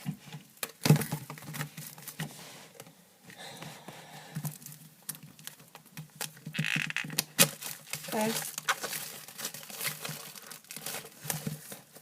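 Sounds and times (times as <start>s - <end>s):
paper rustling: 7.4s - 12.0s.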